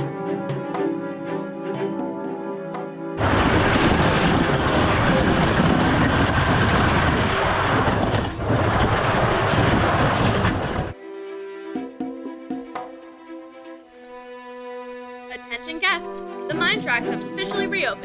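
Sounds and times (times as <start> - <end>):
loud rumbling roar: 3.2 - 11.0.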